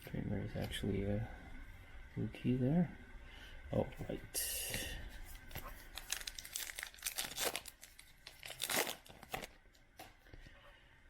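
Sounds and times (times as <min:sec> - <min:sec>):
cards and packaging rustling: 0:05.3 - 0:10.2.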